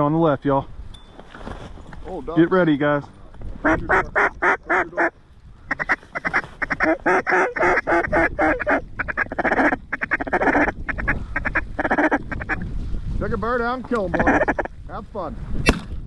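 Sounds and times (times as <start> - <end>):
duck call quacks: 3.6 - 5.1, 5.7 - 12.6, 14.1 - 14.7.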